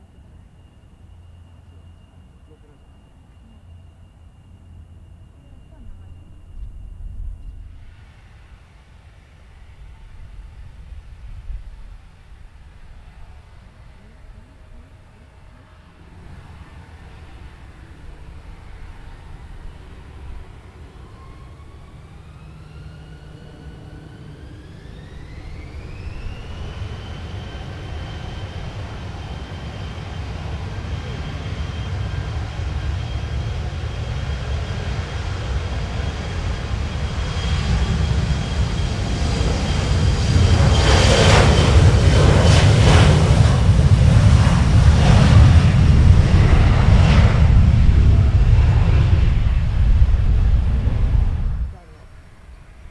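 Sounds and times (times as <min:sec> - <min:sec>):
jet engines spooling up: 0:15.6 - 0:51.8.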